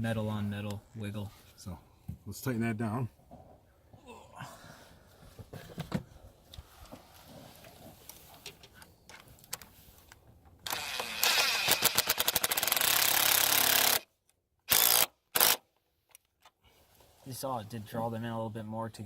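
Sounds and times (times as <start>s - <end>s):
power tool rapid clatter: 10.6s - 14.1s, 14.7s - 15.6s.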